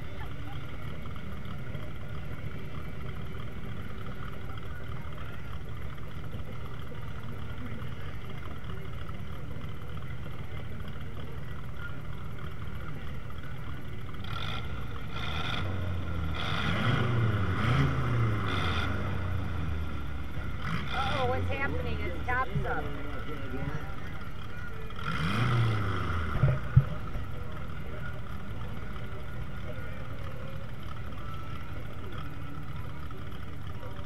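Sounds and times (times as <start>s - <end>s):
low rumble of car engines: 0.0s - 34.0s
engine revving nearby: 14.2s - 21.9s, 25.0s - 27.0s.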